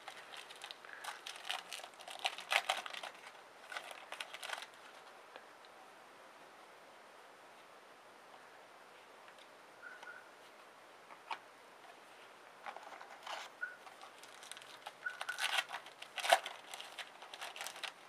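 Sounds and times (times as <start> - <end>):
foil wrappers crinkling: 0.0 - 5.0, 12.6 - 18.0
cards rustling and sliding: 12.6 - 18.0.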